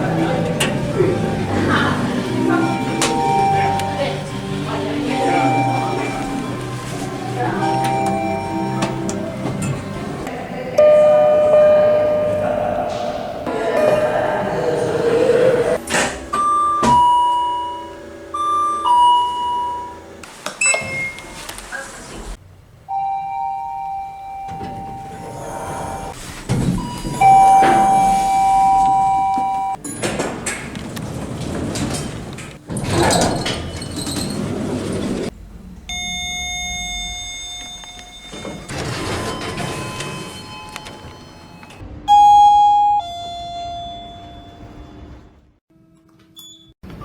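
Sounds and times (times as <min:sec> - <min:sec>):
lift door mechanism noise: 0:00.0 - 0:14.6, 0:15.6 - 0:41.9
elevator arrival chimes: 0:00.0 - 0:21.4, 0:22.9 - 0:29.9, 0:33.4 - 0:45.3
two-note ding-dong: 0:02.5 - 0:04.4, 0:07.6 - 0:09.3, 0:10.8 - 0:12.8, 0:16.3 - 0:20.0, 0:22.9 - 0:25.4, 0:27.1 - 0:29.8.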